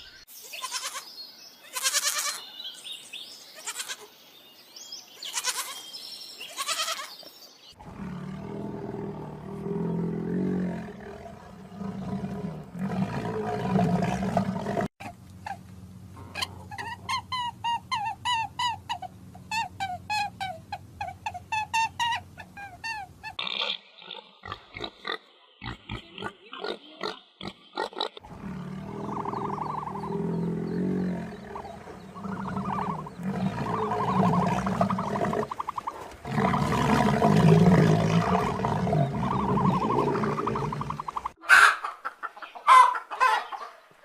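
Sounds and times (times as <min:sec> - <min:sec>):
animal bleats: 0:00.5 - 0:01.0, 0:01.6 - 0:02.4, 0:03.6 - 0:04.1, 0:05.3 - 0:05.8, 0:06.5 - 0:07.1
long low rumbling animal call: 0:07.8 - 0:23.4, 0:28.2 - 0:35.5, 0:36.3 - 0:41.3.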